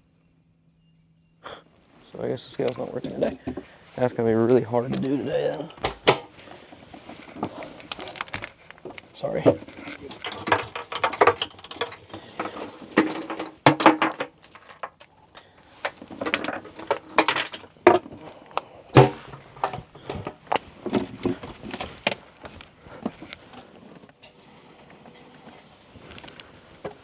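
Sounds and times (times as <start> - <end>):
fishing gear clattering: 2.6 - 18.2, 19.0 - 23.6.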